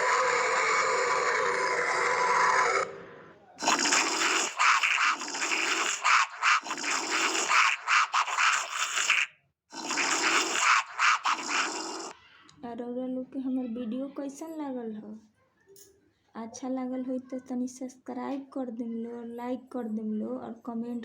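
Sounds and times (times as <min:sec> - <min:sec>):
irregular rasping bursts: 0:03.6 - 0:12.1.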